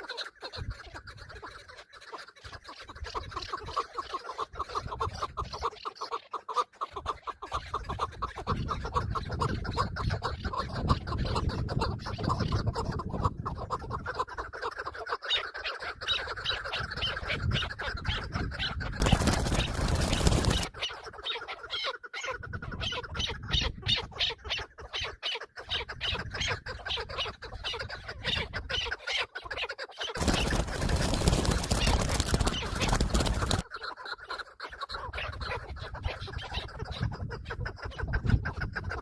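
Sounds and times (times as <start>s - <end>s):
partridge clucking calls: 0.0s - 39.0s
rustling noise bursts: 19.0s - 20.7s, 30.2s - 33.6s.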